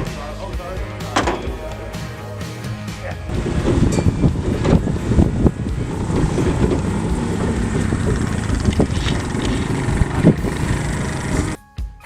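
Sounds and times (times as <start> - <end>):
vehicle running: 1.2 - 11.6
wind buffeting microphone: 3.3 - 11.6.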